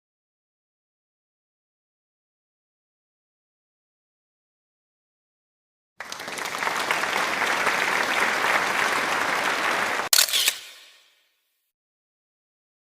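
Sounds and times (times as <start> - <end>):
applause: 6.0 - 10.9.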